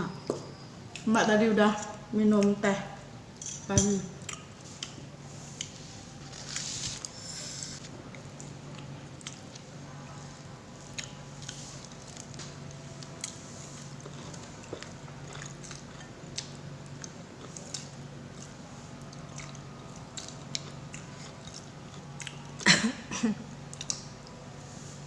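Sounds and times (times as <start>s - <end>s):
person chewing and eating: 4.2s - 9.7s, 10.8s - 22.6s, 23.6s - 24.4s.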